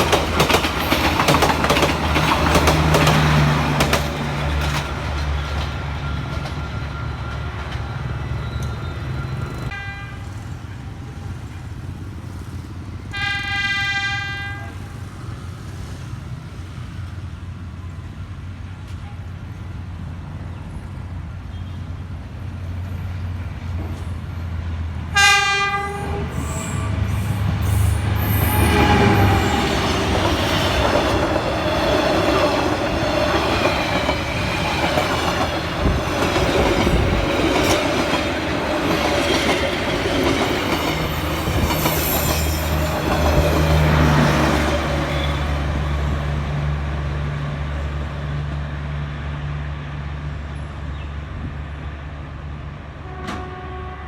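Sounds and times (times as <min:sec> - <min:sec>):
train wheels rumbling on rails: 0:00.0 - 0:54.0
train horn blast: 0:09.7 - 0:10.5, 0:13.1 - 0:15.1, 0:25.1 - 0:31.1, 0:53.0 - 0:54.0.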